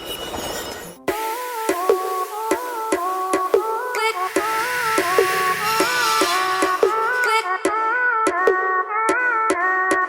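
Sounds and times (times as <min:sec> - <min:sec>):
electronic synth melody: 0:01.1 - 0:07.6.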